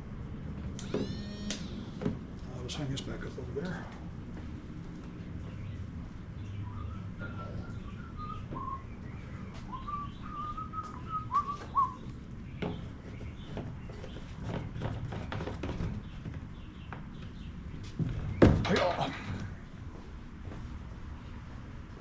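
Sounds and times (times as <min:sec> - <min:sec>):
person whistling a tune: 0:09.7 - 0:12.0.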